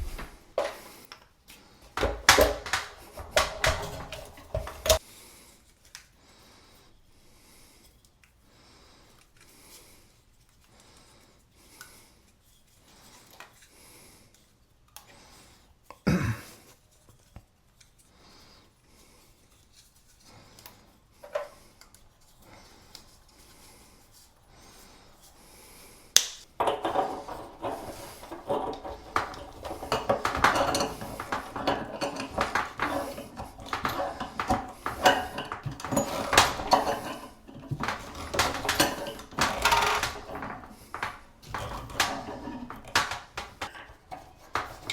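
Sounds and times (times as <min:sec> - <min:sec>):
metal items clinking and knocking: 0:00.0 - 0:01.0, 0:01.8 - 0:05.0, 0:26.5 - 0:44.9.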